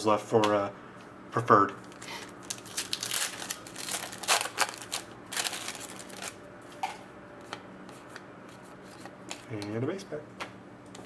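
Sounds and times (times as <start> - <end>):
card pack wrapper crinkling: 1.8 - 6.4.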